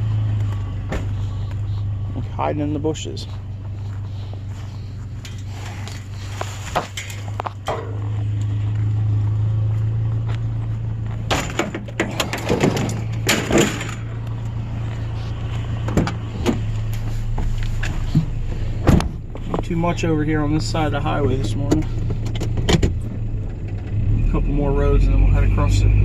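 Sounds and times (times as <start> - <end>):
vehicle driving drone: 0.0 - 26.0
sharp knocks and rattles: 11.2 - 14.2.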